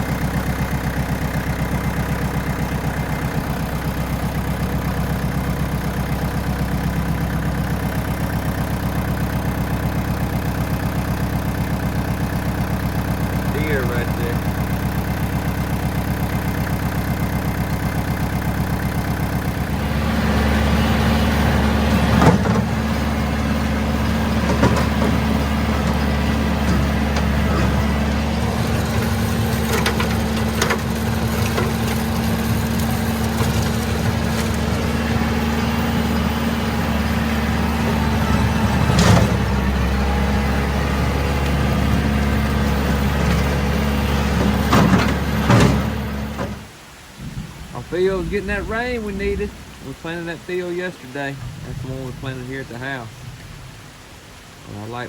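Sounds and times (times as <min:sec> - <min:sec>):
tractor diesel engine running: 0:00.0 - 0:55.0
sharp knocks: 0:24.0 - 0:34.8.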